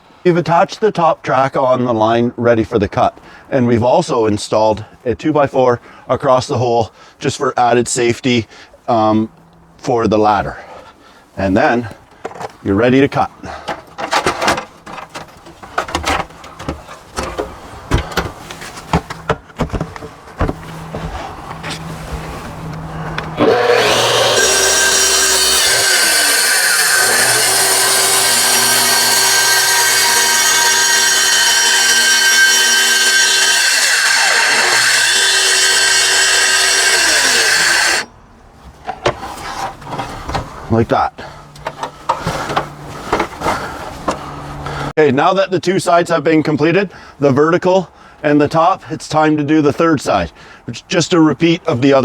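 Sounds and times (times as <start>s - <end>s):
saw knocking and clicking on rail: 13.7s - 20.6s, 23.2s - 38.1s.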